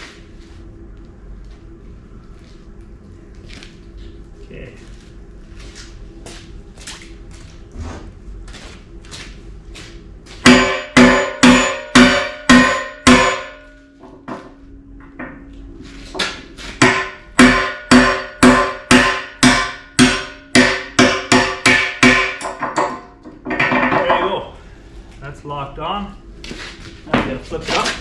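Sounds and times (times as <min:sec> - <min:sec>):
hammer striking metal: 0:10.4 - 0:14.6, 0:16.2 - 0:24.4.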